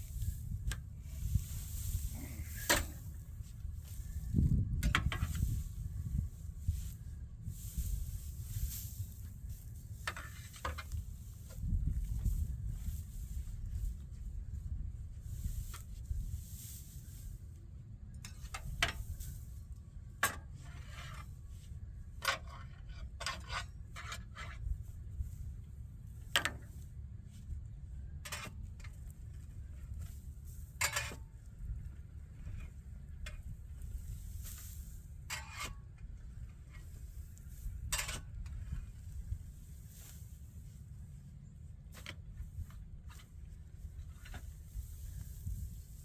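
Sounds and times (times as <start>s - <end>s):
steady low rumble: 0.0s - 20.2s, 24.6s - 46.0s
metal clinks and scrapes: 35.2s - 35.8s.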